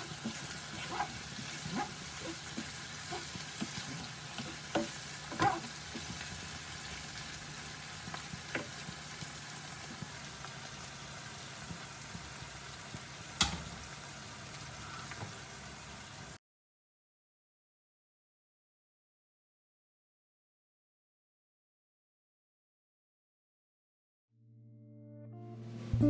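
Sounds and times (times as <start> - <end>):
food sizzling in a pan: 0.0 - 16.4.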